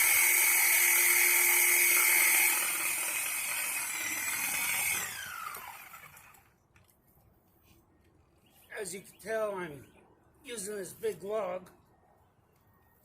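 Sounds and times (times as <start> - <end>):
power saw whining: 0.0 - 6.5.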